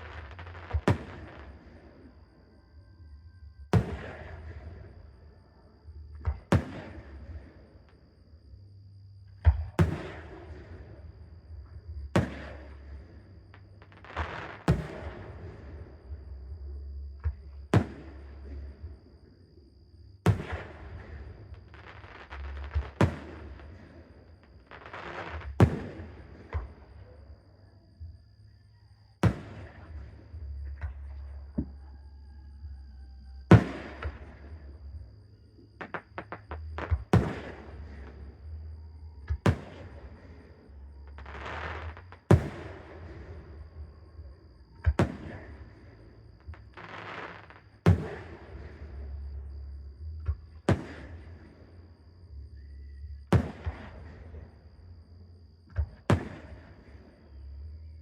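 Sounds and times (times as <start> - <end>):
firework bangs: 0.0 - 1.8, 3.7 - 4.8, 6.3 - 7.4, 9.8 - 10.7, 12.2 - 13.0, 13.9 - 15.7, 20.3 - 24.0, 24.7 - 26.8, 29.2 - 30.0, 33.5 - 34.6, 35.8 - 38.3, 39.3 - 40.4, 41.1 - 43.5, 44.8 - 45.9, 46.5 - 49.0, 50.6 - 51.7, 53.3 - 54.6, 55.8 - 57.1
crackling hiss: 19.9 - 27.0, 33.5 - 43.8, 44.8 - 54.8.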